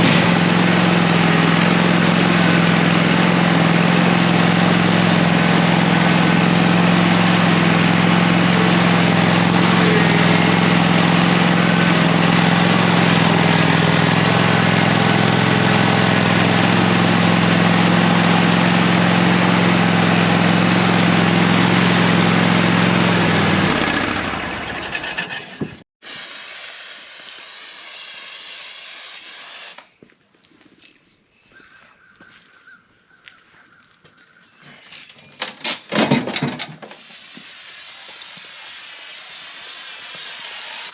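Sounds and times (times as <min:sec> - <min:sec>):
small engine running: 0:00.0 - 0:29.9, 0:36.9 - 0:40.9.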